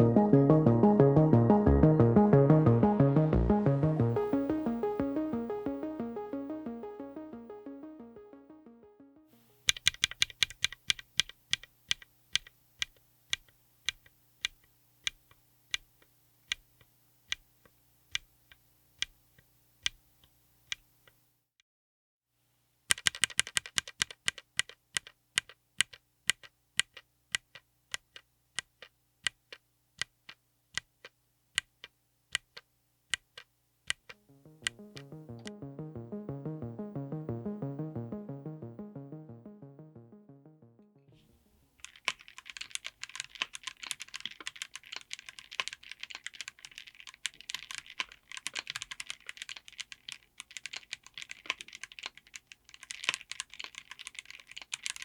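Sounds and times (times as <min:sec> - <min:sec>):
short musical interlude: 0:00.0 - 0:09.4
fast typing on keyboard: 0:09.7 - 0:14.6, 0:22.9 - 0:30.4, 0:41.8 - 0:55.0
mechanical keyboard key clicks: 0:09.7 - 0:15.9, 0:22.9 - 0:32.6, 0:41.8 - 0:55.0.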